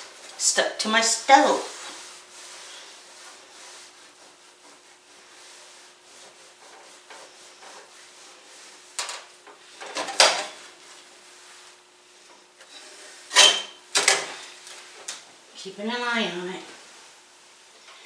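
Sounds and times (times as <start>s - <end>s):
scrubbing food on a stovetop: 0.0s - 17.9s
sharp scrapes on a stovetop: 12.7s - 13.8s.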